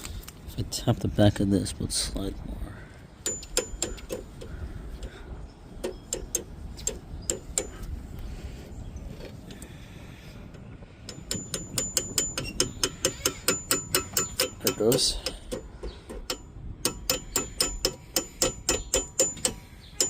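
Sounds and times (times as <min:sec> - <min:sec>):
metal-on-metal taps: 0:03.2 - 0:05.1, 0:05.8 - 0:07.8, 0:11.1 - 0:20.0.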